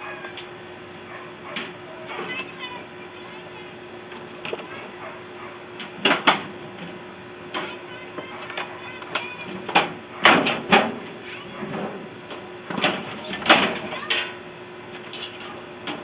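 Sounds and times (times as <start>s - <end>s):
faint steady hum: 0.0s - 16.0s
metal parts knocking and clattering: 0.2s - 0.6s, 1.5s - 2.8s, 5.8s - 16.0s
metal scraping: 5.7s - 16.0s.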